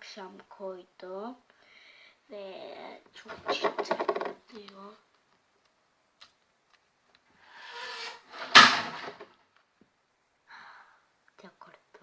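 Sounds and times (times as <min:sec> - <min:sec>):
rustling: 0:06.6 - 0:09.7
picture frame falling bang: 0:07.6 - 0:09.3.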